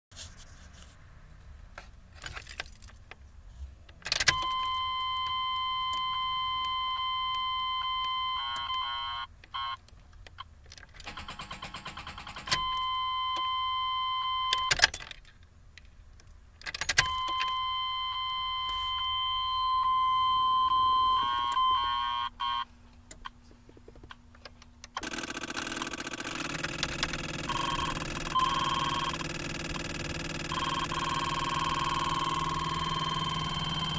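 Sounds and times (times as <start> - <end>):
clicks and key rattle: 2.2 - 3.2, 4.0 - 5.3, 14.5 - 17.6
dashboard warning buzzer: 17.0 - 22.7, 25.0 - 33.9
short beeps: 30.5 - 33.9.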